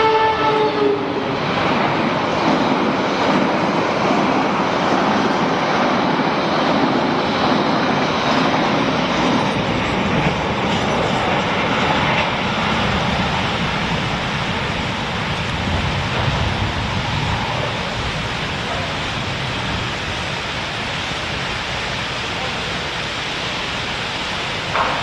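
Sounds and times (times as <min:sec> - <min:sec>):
train rumbling past: 0:00.0 - 0:25.0
heavy rain hiss: 0:12.3 - 0:25.0.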